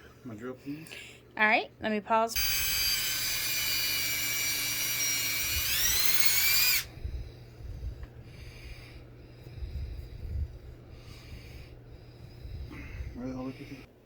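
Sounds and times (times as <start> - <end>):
electric drill whining: 2.4 - 7.0.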